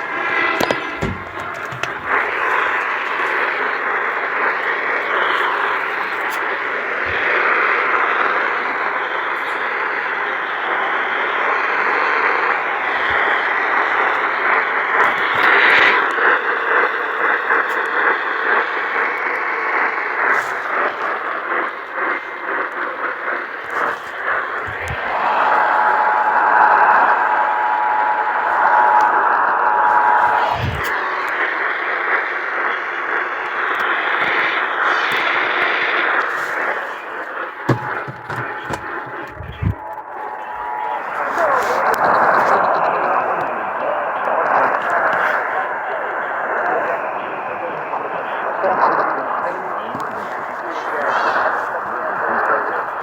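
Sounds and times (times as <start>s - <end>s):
attention tone: 0.0s - 3.4s, 37.6s - 42.6s
radio static hiss: 0.0s - 53.0s
low thump: 0.6s - 2.4s
faint crackles: 12.2s - 25.4s, 29.9s - 53.0s.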